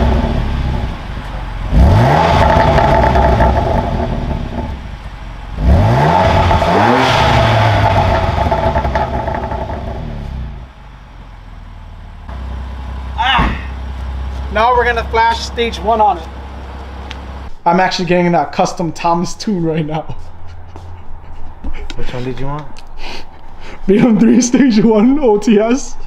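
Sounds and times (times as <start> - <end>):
car engine revving: 0.0 - 17.5.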